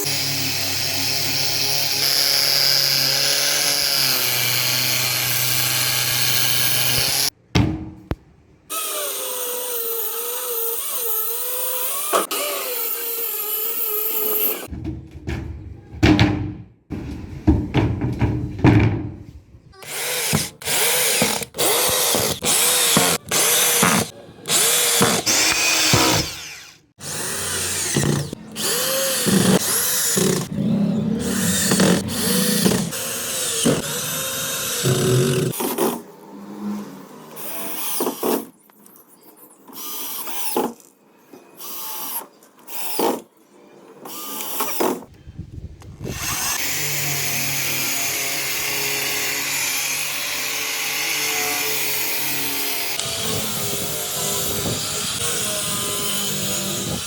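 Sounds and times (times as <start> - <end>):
power drill bursts: 19.8 - 30.5.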